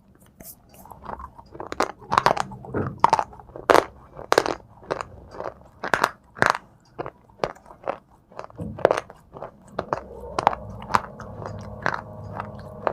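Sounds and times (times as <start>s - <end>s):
crunching and chewing: 0.0s - 12.9s
low hum: 8.6s - 12.9s.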